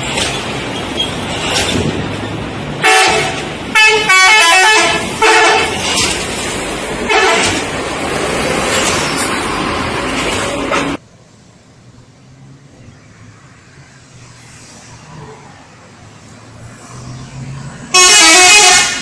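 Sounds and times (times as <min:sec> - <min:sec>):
street noise: 0:00.0 - 0:19.0
multi-tone bus horn: 0:02.8 - 0:06.2, 0:07.0 - 0:07.7, 0:17.9 - 0:19.0.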